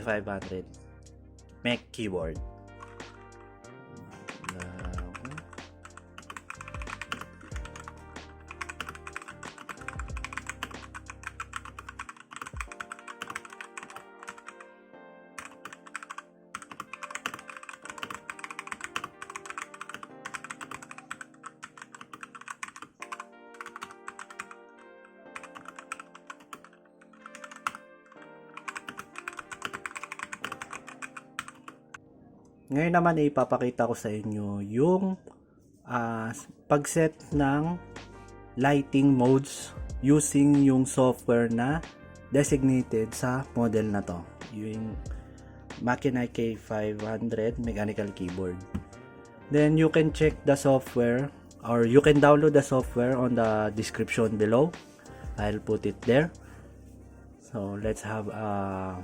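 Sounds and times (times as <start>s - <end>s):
background music: 0.0s - 59.0s
mechanical keyboard typing: 2.8s - 3.0s, 4.4s - 14.6s, 15.4s - 24.6s, 25.4s - 27.8s, 28.6s - 31.8s.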